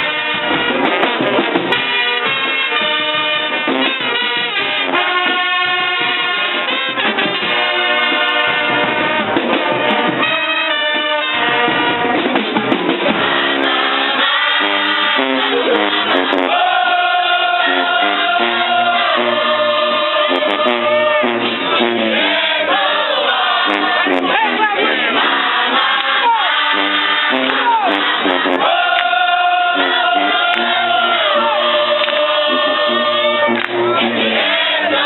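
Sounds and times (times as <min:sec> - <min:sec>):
horn section: 0:00.0 - 0:35.0
live band playing: 0:00.0 - 0:35.0
drum beat: 0:20.5 - 0:35.0.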